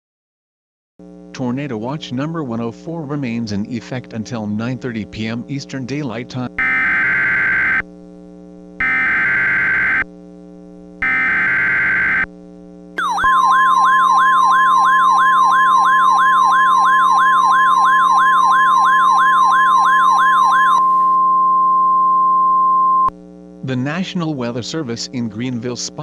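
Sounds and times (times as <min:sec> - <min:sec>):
digital data bursts: 0:06.6 - 0:07.8, 0:08.8 - 0:10.0, 0:11.0 - 0:12.3, 0:13.0 - 0:21.0
fast siren-like wail: 0:06.6 - 0:07.8, 0:08.8 - 0:10.0, 0:11.0 - 0:12.3, 0:13.0 - 0:21.8
steady warning alarm tone: 0:06.6 - 0:07.8, 0:08.8 - 0:10.1, 0:11.0 - 0:12.3, 0:13.0 - 0:23.1.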